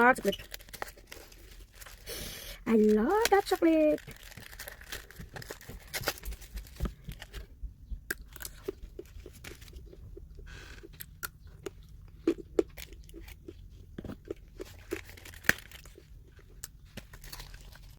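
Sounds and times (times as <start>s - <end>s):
person chewing chocolate: 8.0s - 17.9s.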